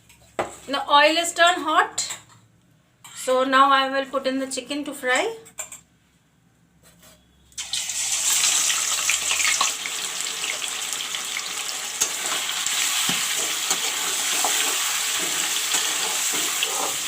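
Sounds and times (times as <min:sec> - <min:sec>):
oil popping and crackling: 0:07.6 - 0:13.8
chicken frying in hot oil: 0:07.6 - 0:17.0.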